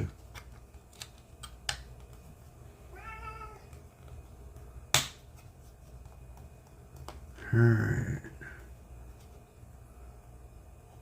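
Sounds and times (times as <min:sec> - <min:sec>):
cat meowing: 0:02.9 - 0:03.7.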